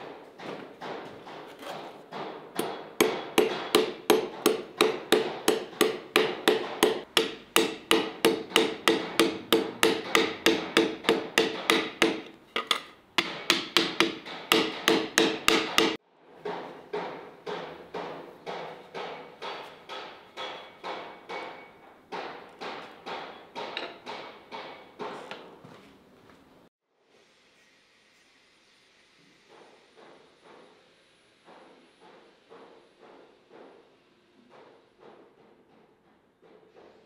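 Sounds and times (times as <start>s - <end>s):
hard ringing knocks: 2.1s - 16.0s.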